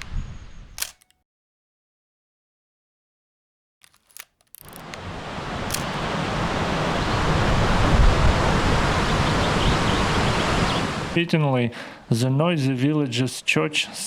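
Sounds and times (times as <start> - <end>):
fast river rushing: 4.8 - 11.2.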